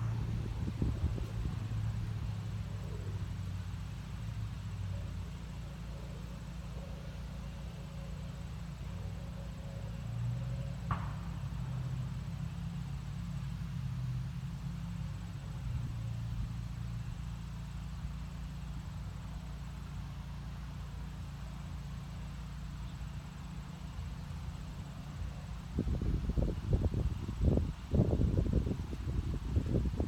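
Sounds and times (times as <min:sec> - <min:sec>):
wind on microphone: 0:00.0 - 0:02.4.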